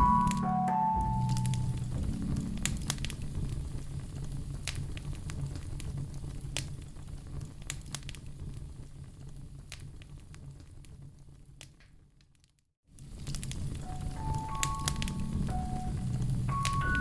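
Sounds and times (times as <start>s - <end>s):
wood fire crackling: 1.3s - 12.4s, 13.0s - 17.0s.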